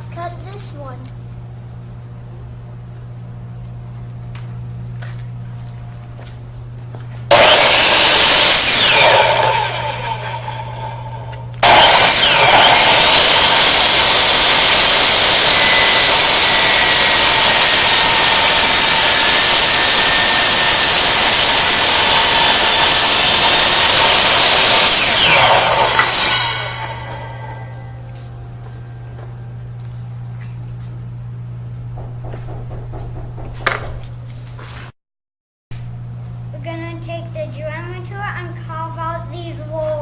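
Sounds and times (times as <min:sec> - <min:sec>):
miter saw running: 0:07.3 - 0:28.0.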